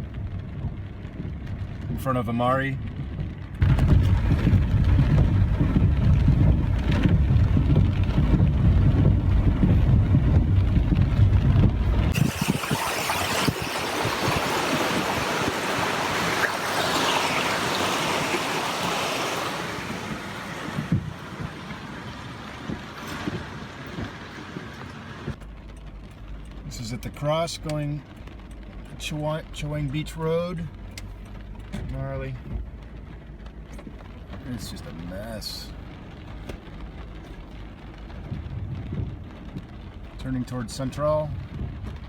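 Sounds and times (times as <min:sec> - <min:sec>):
vehicle low rumble: 0:00.0 - 0:42.0
rushing hiss of water: 0:12.1 - 0:25.3.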